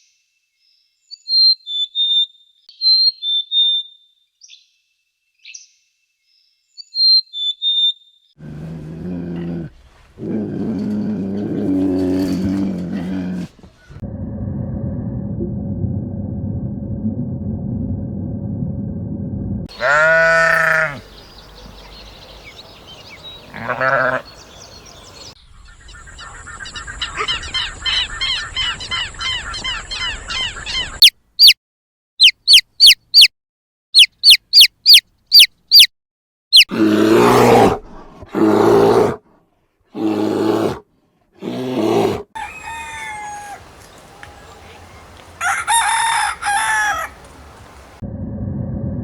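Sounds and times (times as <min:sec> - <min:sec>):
bleat-like animal call: 0:19.7 - 0:21.1, 0:23.5 - 0:24.4
long harsh animal calls: 0:19.7 - 0:21.1, 0:23.5 - 0:24.3.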